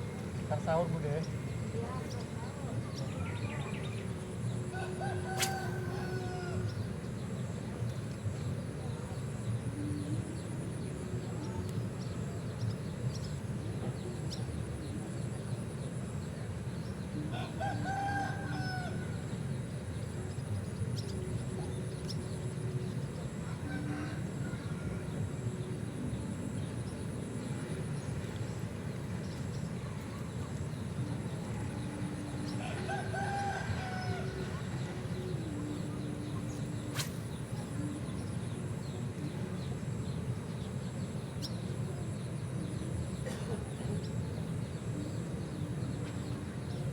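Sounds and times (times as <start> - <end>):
low background noise: 0.0 - 46.9
rooster crowing: 4.8 - 6.7, 17.4 - 19.2, 23.5 - 25.1, 32.6 - 34.7.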